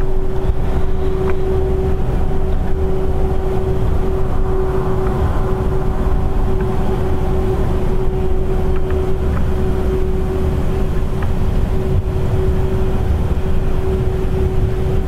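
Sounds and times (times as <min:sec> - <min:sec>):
distant horn-like drone: 0:00.0 - 0:15.0
low rumble: 0:00.0 - 0:15.0.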